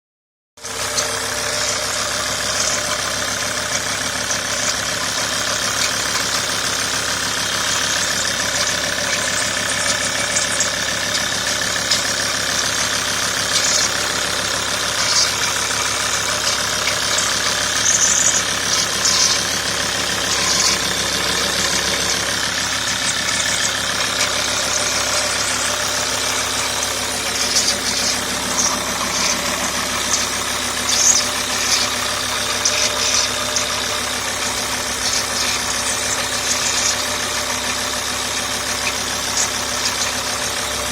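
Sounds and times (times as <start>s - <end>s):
diesel engine idling: 0.6s - 40.9s
high-pitched chirps: 13.0s - 37.0s.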